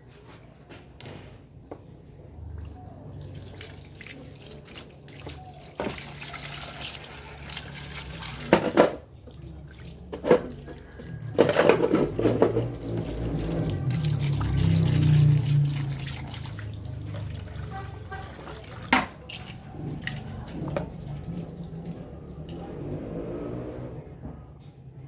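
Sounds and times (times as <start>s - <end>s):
tap water running into sink: 3.3s - 21.5s
parts knocking against sink: 10.2s - 12.8s.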